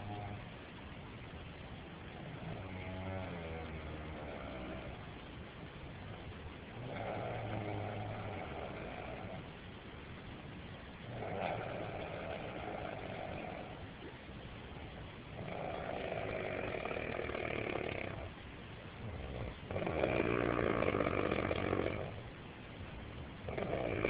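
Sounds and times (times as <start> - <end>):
person snoring: 11.1 - 13.8, 19.0 - 22.2.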